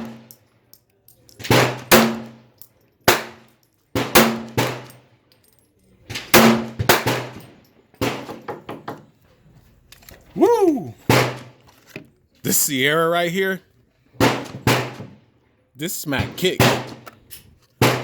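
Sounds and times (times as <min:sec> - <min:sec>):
pistol shots with echo: 0:01.4 - 0:02.4, 0:03.1 - 0:05.0, 0:06.3 - 0:08.4, 0:14.2 - 0:15.1, 0:16.2 - 0:17.0, 0:17.8 - 0:18.0.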